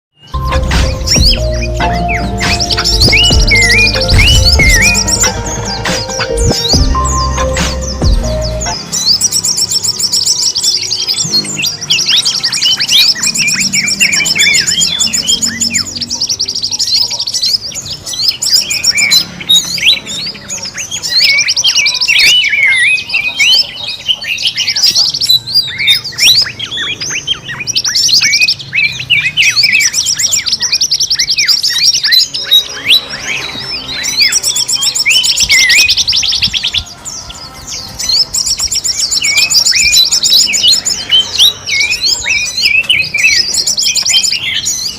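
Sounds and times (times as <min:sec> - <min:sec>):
forest birds chirping: 0:00.1 - 0:44.9
fast high bird trills: 0:00.2 - 0:20.3.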